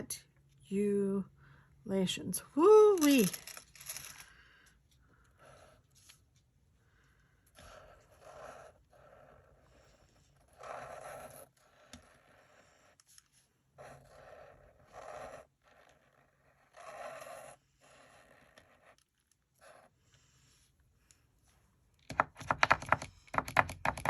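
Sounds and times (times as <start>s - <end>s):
marker scratching on paper: 7.6s - 20.4s.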